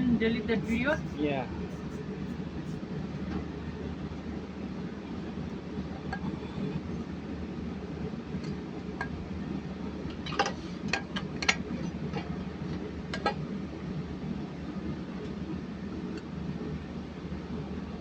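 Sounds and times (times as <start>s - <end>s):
low hum: 0.0s - 13.1s.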